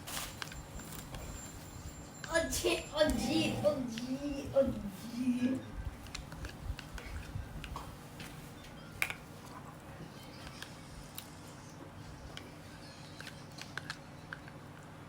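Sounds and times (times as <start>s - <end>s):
low steady hum: 0.7s - 12.8s.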